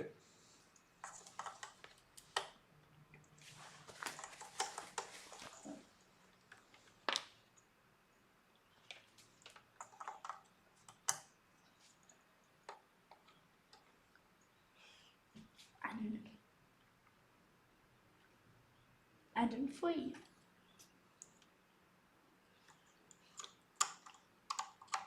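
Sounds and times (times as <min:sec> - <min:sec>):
rustling: 0:03.4 - 0:07.3
light clicks and taps of plastic parts: 0:08.8 - 0:14.2, 0:22.6 - 0:25.0.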